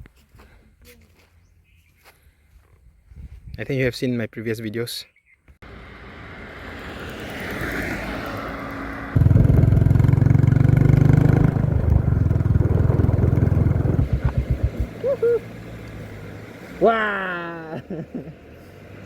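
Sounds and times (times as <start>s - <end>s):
motorcycle engine running: 9.2s - 15.4s.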